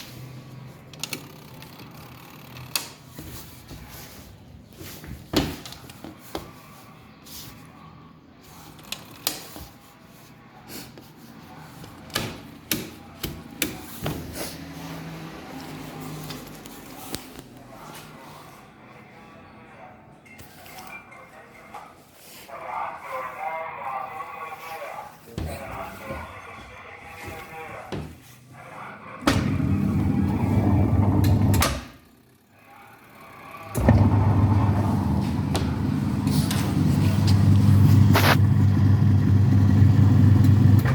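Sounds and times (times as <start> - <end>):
washing machine motor hum: 29.2 - 32.0, 32.7 - 40.9.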